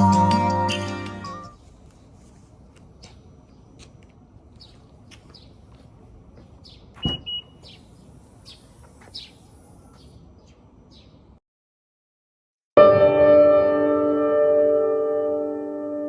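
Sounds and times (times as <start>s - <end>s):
small birds chirping: 4.5s - 5.8s, 6.5s - 11.3s.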